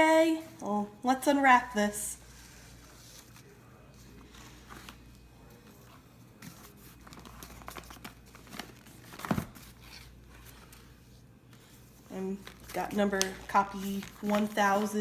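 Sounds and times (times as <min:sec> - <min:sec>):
packaging crinkled and torn open: 0:12.3 - 0:14.6.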